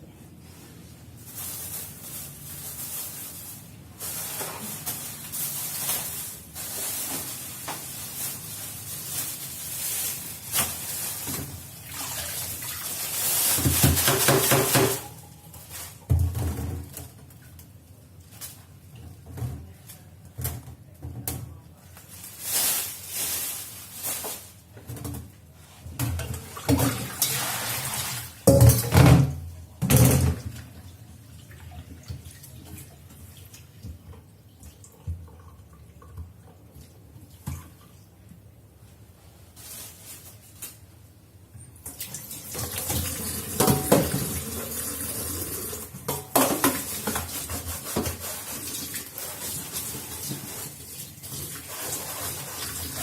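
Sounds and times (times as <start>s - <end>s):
clatter of things in sink: 4.0s - 38.0s, 41.8s - 53.0s.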